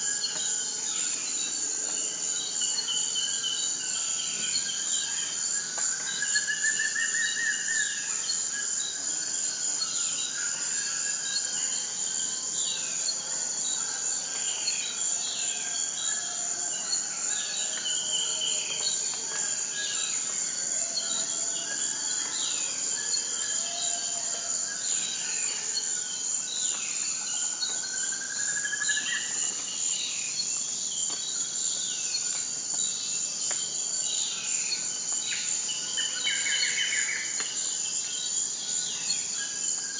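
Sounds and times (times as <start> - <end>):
high-pitched insect trill: 0.1 - 39.9.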